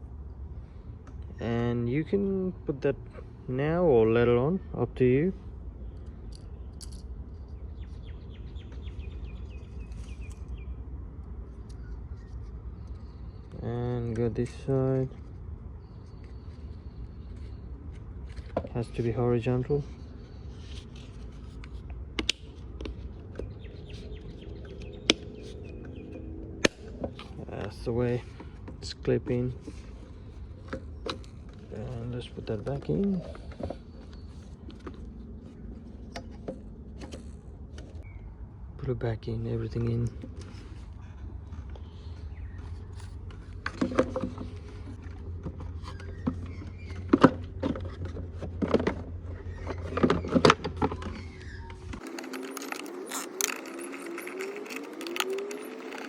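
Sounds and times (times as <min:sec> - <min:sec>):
birds chirping: 0:00.2 - 0:48.2, 0:49.2 - 0:56.0
small parts clicking and knocking: 0:43.0 - 0:56.0
small metal parts clicking: 0:52.0 - 0:56.0.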